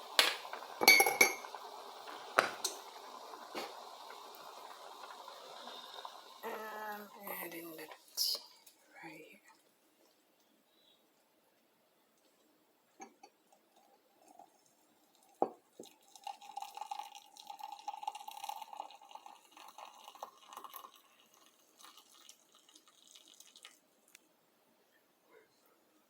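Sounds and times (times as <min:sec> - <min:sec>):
tea pouring into a cup: 0:00.0 - 0:08.0, 0:13.4 - 0:24.1.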